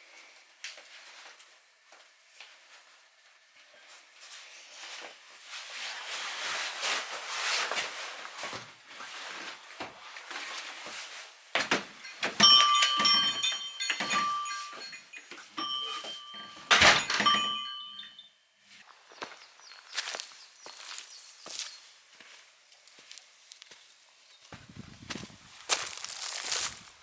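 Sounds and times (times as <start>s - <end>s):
clicks and knocks: 11.6s - 18.1s.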